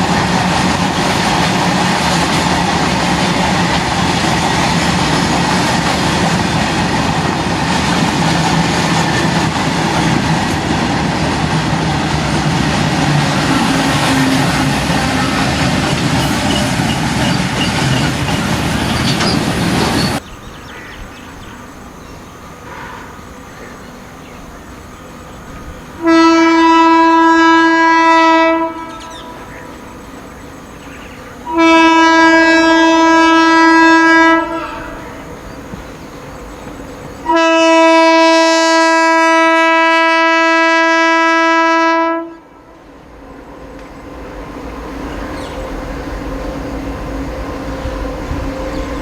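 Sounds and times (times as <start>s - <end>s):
freight train wheels clacking: 0.0s - 20.3s, 34.0s - 39.3s
locomotive horn blast: 13.1s - 18.1s, 26.0s - 29.6s, 31.4s - 35.4s, 37.2s - 42.8s.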